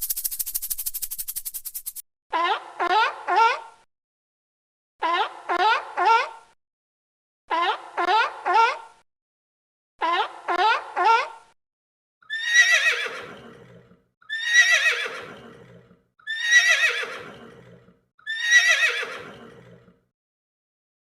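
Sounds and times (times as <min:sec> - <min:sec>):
horse neighing: 0:12.3 - 0:20.0.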